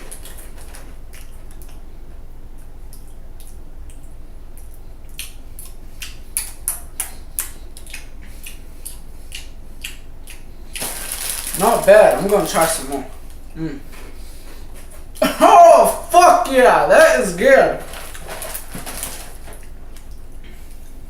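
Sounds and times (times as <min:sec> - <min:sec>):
person chewing crunchy cereal: 0:04.5 - 0:13.0, 0:17.7 - 0:21.0.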